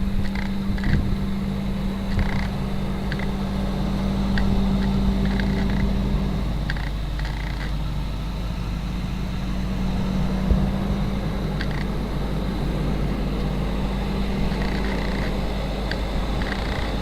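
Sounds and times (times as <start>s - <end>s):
diesel engine running: 0.0s - 17.0s
faint clicks: 0.2s - 1.0s, 2.1s - 7.8s, 11.5s - 12.0s, 14.4s - 17.0s.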